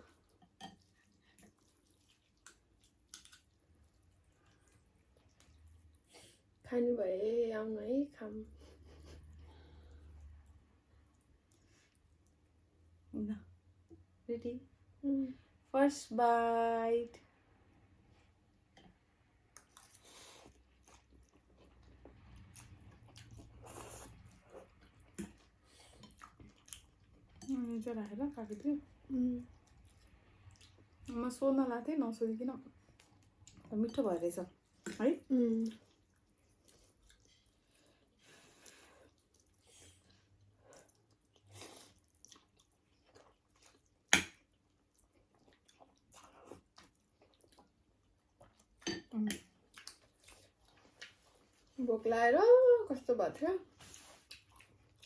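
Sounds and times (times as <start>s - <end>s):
person chewing: 0.0s - 6.0s, 19.5s - 27.5s, 29.5s - 31.1s, 35.5s - 48.8s, 49.4s - 51.7s, 53.8s - 55.0s.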